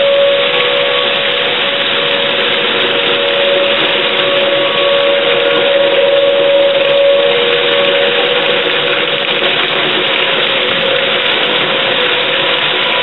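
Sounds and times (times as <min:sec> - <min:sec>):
distant storm warning siren: 0:00.0 - 0:13.0
heavy rain pouring: 0:00.0 - 0:13.0.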